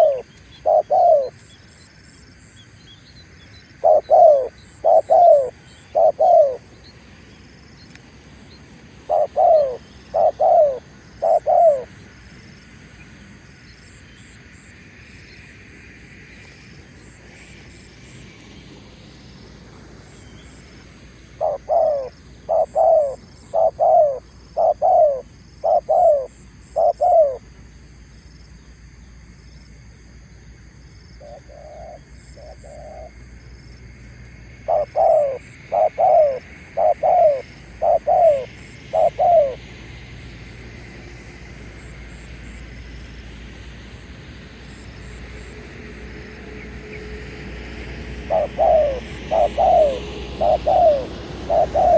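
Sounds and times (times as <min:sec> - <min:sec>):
dove cooing: 0:00.0 - 0:01.4, 0:03.7 - 0:06.7, 0:09.0 - 0:12.0, 0:21.3 - 0:27.5, 0:31.2 - 0:33.2, 0:34.6 - 0:39.8, 0:47.6 - 0:51.9.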